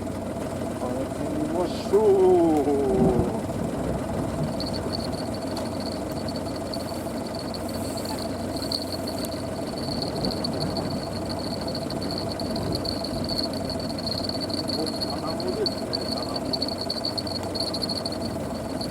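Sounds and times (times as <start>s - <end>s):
engine-like rumble: 0.0s - 18.9s
fishing reel whine: 4.4s - 18.9s.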